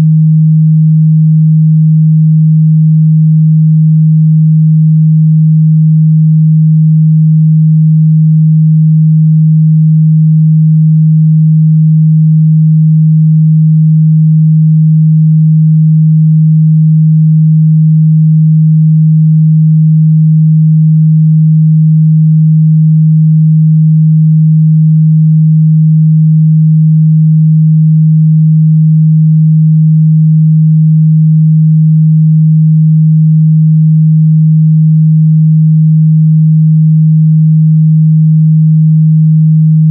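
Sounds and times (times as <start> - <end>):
low sine-wave test tone: 0.0 - 39.9.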